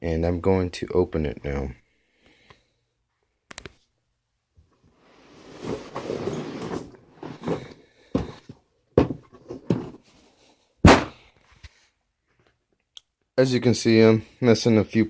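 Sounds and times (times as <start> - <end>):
case scraping rustle: 5.1 - 10.1.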